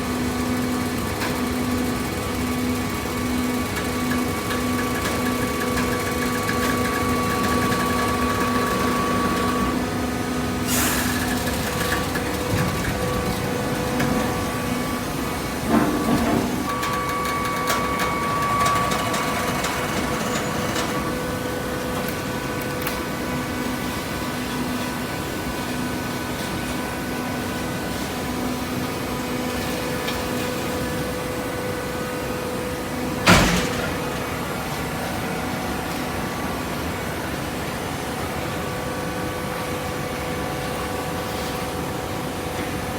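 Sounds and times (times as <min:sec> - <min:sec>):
baler machine humming: 0:00.0 - 0:24.7.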